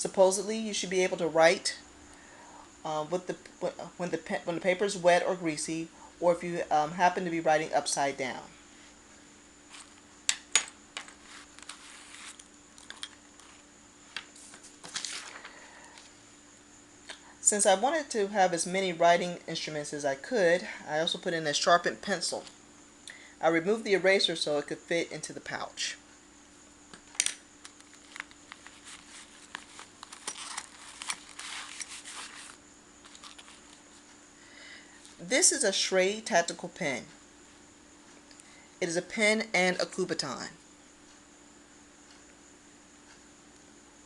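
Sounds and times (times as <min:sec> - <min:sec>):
rustling: 0:11.0 - 0:13.7, 0:27.8 - 0:34.2.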